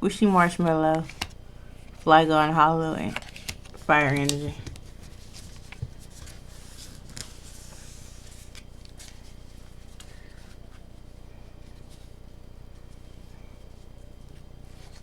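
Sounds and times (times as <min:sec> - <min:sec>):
low steady hum: 0:00.0 - 0:15.0
cards and wrapping rustling: 0:00.4 - 0:11.0.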